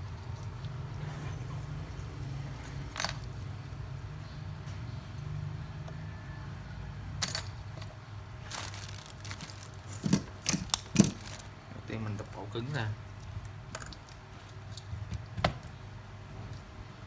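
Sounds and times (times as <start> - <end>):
small objects clinking on bench: 7.2 - 7.9, 8.5 - 11.5.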